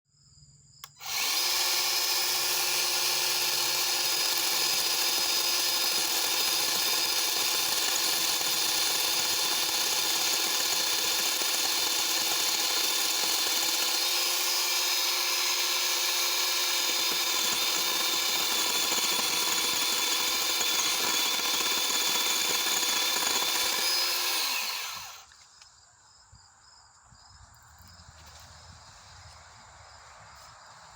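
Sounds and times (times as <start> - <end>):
electric chainsaw whine: 0.8 - 25.4.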